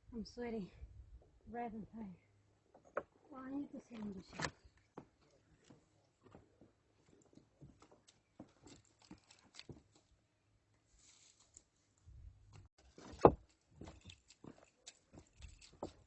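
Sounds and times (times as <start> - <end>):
footsteps on stony ground: 4.0 - 10.1, 12.5 - 16.0.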